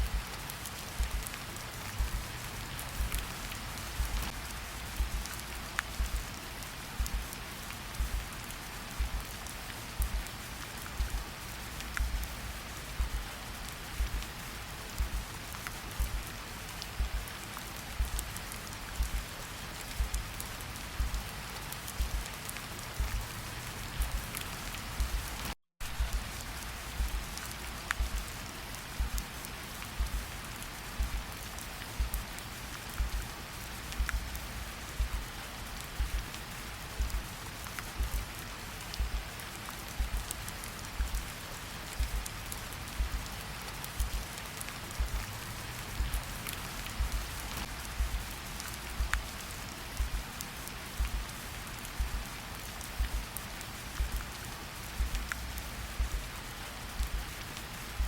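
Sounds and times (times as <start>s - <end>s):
heartbeat thumps: 0.0s - 0.2s, 1.0s - 1.3s, 1.9s - 5.3s, 5.9s - 6.3s, 7.0s - 7.3s, 7.9s - 8.3s, 8.9s - 9.3s, 10.0s - 10.3s, 10.9s - 11.3s, 12.0s - 12.3s, 12.9s - 13.3s, 13.9s - 15.3s, 16.0s - 16.3s, 16.9s - 17.3s, 18.0s - 18.4s, 19.0s - 19.3s, 19.9s - 20.4s, 21.0s - 21.3s, 22.0s - 22.3s, 23.0s - 23.4s, 24.0s - 27.4s, 28.0s - 28.4s, 29.0s - 29.4s, 30.0s - 30.4s, 31.0s - 31.4s, 32.0s - 32.4s, 33.0s - 35.3s, 36.0s - 36.4s, 37.0s - 37.4s, 38.0s - 38.3s, 39.0s - 39.4s, 40.0s - 41.3s, 42.0s - 42.4s, 43.0s - 43.3s, 44.0s - 44.3s, 45.0s - 49.4s, 50.0s - 50.4s, 51.0s - 53.4s, 54.0s - 54.3s, 55.0s - 57.4s
steady rain: 0.0s - 58.0s.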